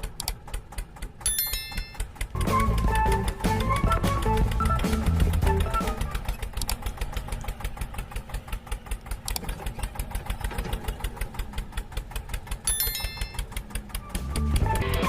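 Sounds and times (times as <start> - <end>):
tractor diesel engine running: 0.0 - 15.0.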